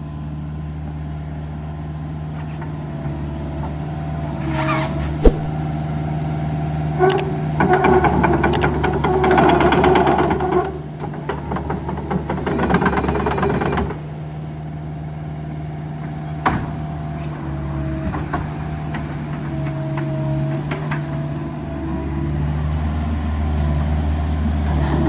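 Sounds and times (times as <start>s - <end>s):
brief squeaks: 4.4s - 5.6s, 7.1s - 7.4s
excavator diesel engine running: 6.1s - 25.0s
clicks: 7.1s - 7.3s.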